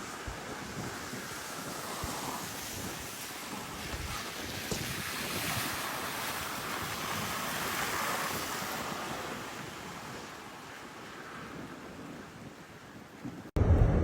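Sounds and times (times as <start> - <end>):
wind: 0.0 - 14.0
storm surf: 13.3 - 14.0.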